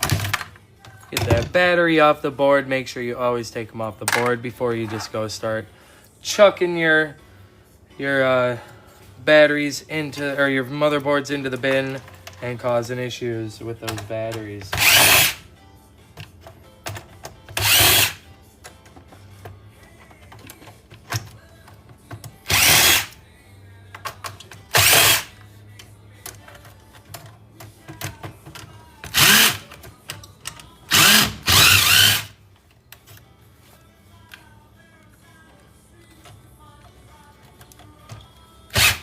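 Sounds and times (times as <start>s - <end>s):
faint music: 0.0s - 39.0s
power drill bursts: 14.8s - 15.4s, 17.6s - 18.2s, 22.5s - 23.1s, 24.7s - 25.3s, 29.1s - 29.6s, 30.9s - 32.4s, 38.7s - 39.0s.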